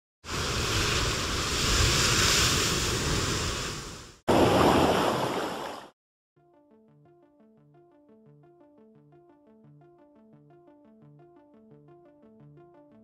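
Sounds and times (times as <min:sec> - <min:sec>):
wind: 0:00.2 - 0:05.9
rushing sea water: 0:00.2 - 0:06.0.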